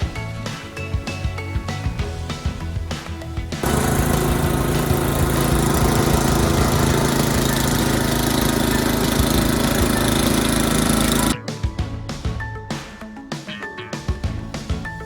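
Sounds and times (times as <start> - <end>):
snowblower engine running: 3.6 - 11.4.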